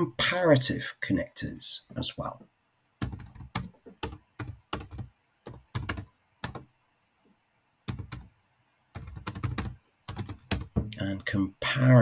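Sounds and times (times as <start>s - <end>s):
typing on computer keyboard: 3.0s - 6.7s, 7.9s - 8.3s, 9.0s - 10.8s.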